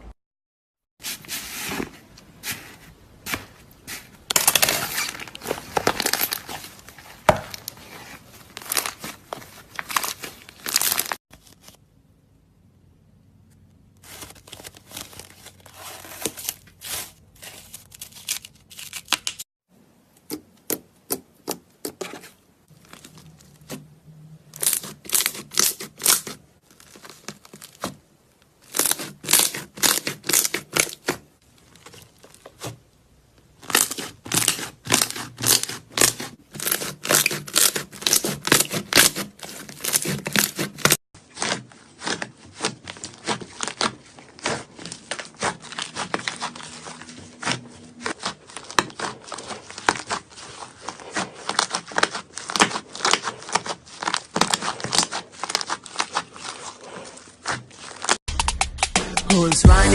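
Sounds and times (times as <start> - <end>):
slime crackling and popping: 4.3 - 11.2, 33.6 - 46.7.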